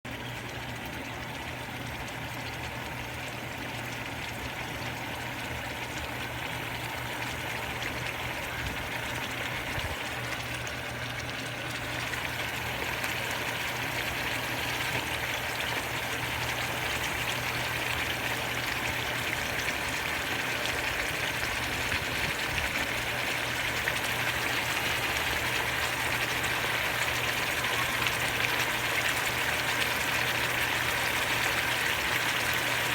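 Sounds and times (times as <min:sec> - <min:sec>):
meat sizzling in a pan: 0:11.8 - 0:32.9.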